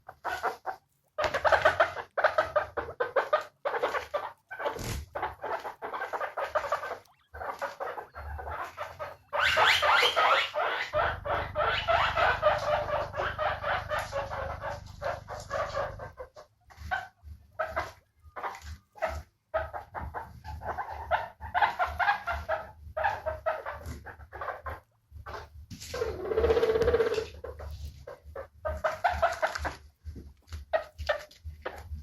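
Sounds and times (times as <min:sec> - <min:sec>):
guinea pigs squeaking: 0:00.0 - 0:32.0.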